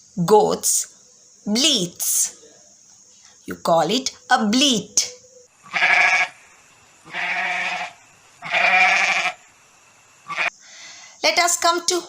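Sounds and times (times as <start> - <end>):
goat bleating: 5.6 - 6.3, 7.1 - 9.4, 10.3 - 10.5.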